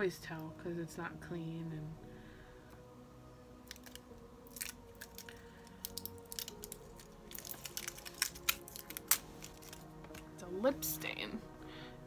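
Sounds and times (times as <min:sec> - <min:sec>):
soft background music: 0:00.0 - 0:12.0
package crinkling and clicking: 0:03.7 - 0:10.3.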